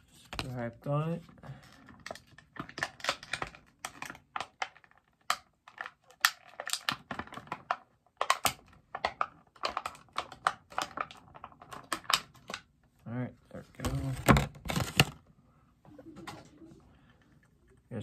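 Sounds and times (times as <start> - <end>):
packaging clicks and crinkles: 1.6 - 12.7, 13.8 - 15.2.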